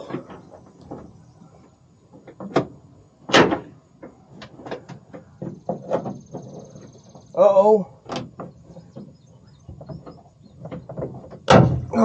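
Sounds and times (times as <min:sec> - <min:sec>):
loud metal clunk: 0:02.2 - 0:06.9, 0:08.1 - 0:12.0.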